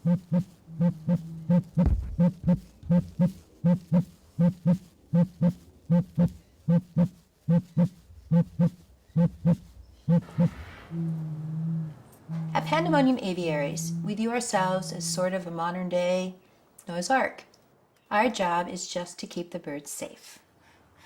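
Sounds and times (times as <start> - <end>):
pigeons hooting: 0.0 - 1.9, 7.7 - 15.3
low thud: 1.6 - 3.3.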